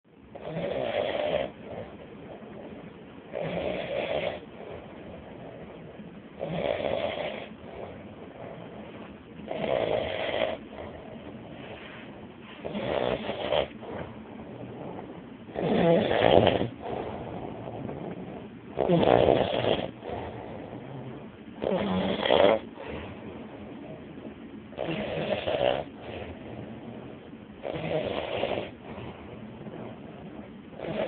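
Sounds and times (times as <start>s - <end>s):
person snoring: 12.6s - 13.8s, 15.5s - 23.0s, 24.8s - 26.3s, 27.6s - 28.8s, 30.8s - 31.0s.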